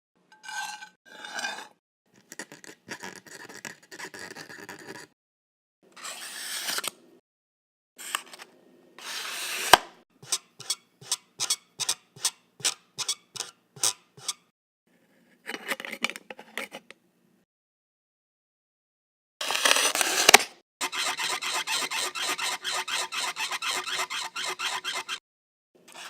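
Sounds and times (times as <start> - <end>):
scraping and rubbing: 0.4 - 5.1, 20.8 - 25.2.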